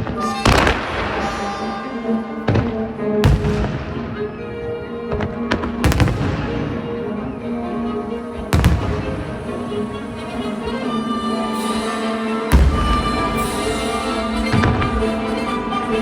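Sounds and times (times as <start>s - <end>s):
orchestral music: 0.0s - 16.0s
firework booms: 2.5s - 4.2s, 5.1s - 7.0s, 8.5s - 9.8s, 12.5s - 16.0s.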